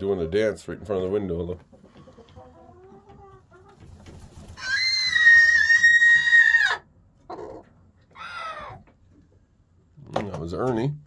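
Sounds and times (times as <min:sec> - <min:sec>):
chicken clucking: 0:00.0 - 0:05.7, 0:06.6 - 0:09.4
rooster squawk: 0:04.6 - 0:08.8.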